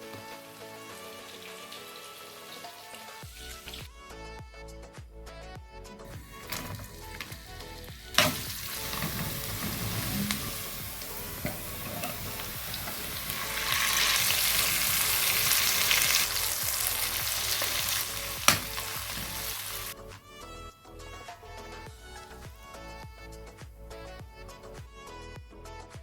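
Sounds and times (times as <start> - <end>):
fish sizzling in hot oil: 0.0 - 3.9, 6.1 - 20.0.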